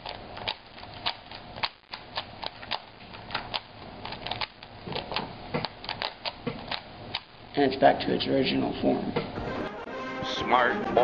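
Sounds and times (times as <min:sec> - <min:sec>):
puzzle cube clicking: 0:00.0 - 0:07.3.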